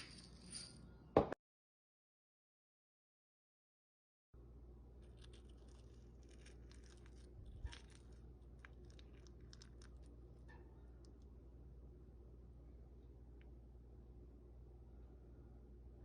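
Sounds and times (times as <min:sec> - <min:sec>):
low steady hum: 0:04.4 - 0:16.0.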